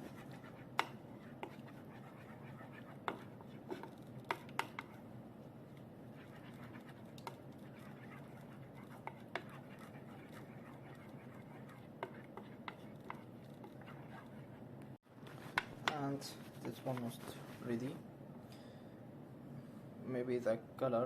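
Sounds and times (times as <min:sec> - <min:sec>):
utensil stirring thick sauce: 0:00.0 - 0:14.7
steady low hum: 0:00.0 - 0:20.8.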